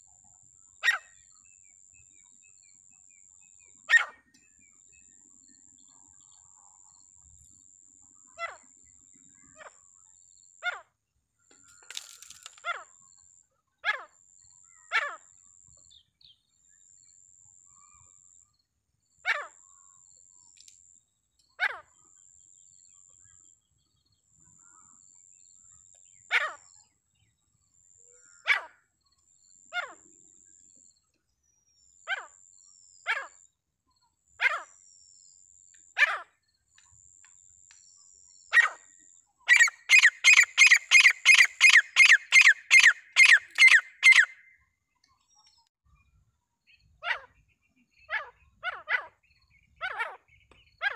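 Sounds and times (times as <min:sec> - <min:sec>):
francolin calling: 0:39.5 - 0:44.5.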